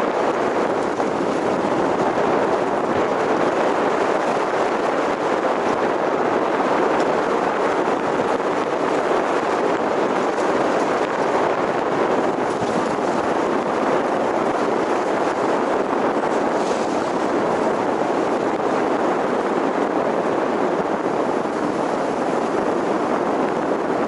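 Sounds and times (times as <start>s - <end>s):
car road and wind noise: 0.0s - 24.0s.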